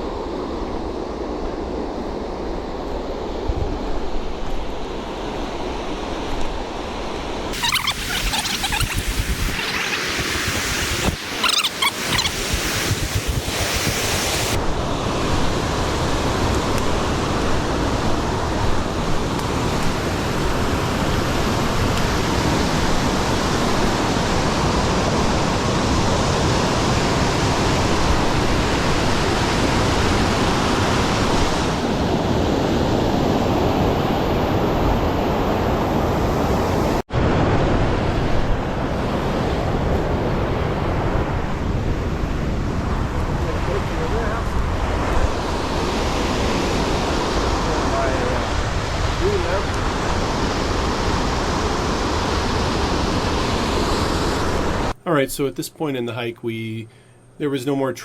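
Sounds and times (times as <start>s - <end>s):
creek water rushing: 7.5s - 15.3s.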